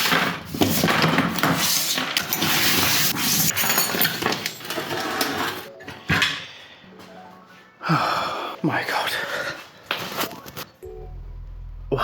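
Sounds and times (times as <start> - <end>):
metal tools clattering on workbench: 0.0 - 6.4.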